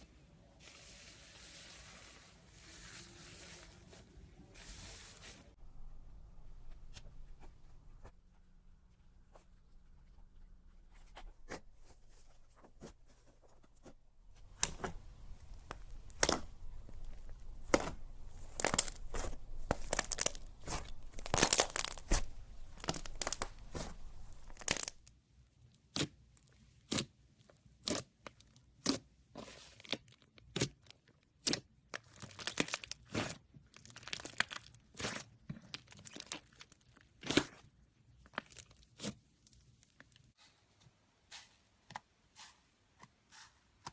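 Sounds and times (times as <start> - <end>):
slime crackling and popping: 14.4 - 25.1, 29.8 - 40.4.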